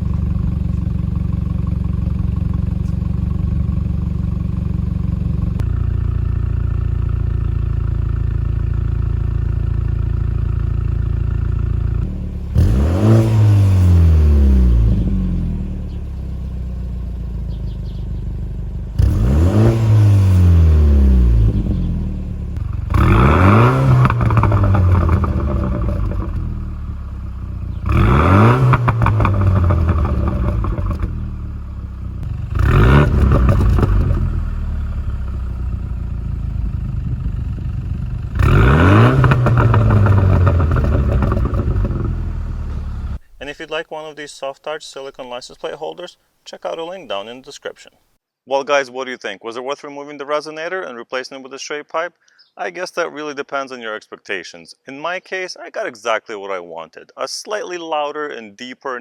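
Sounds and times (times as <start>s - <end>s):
car exhaust idling and revving: 0.0s - 43.6s.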